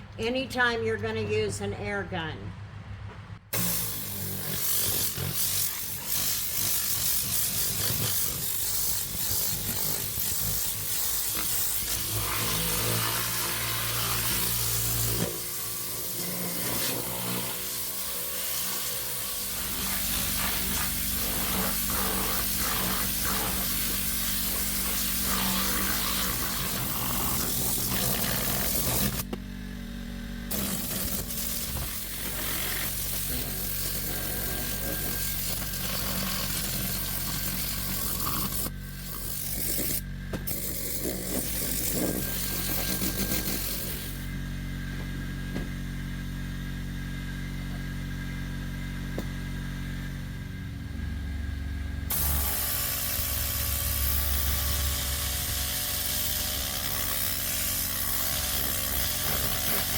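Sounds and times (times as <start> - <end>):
compressed air blow gun hissing: 3.5 - 15.6, 16.6 - 29.2
steady low hum: 19.5 - 57.2.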